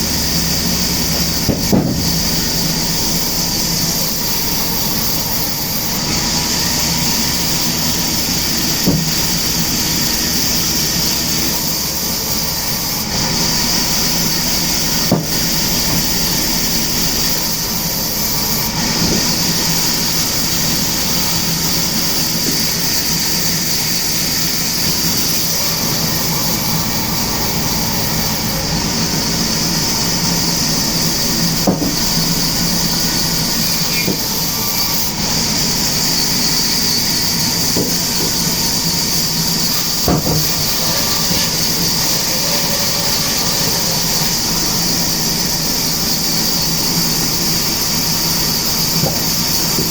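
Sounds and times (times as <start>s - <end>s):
sawmill machinery hissing: 0.0s - 49.9s
sharp knocks: 1.2s - 2.2s, 8.8s - 9.2s, 31.6s - 32.1s, 40.1s - 40.5s.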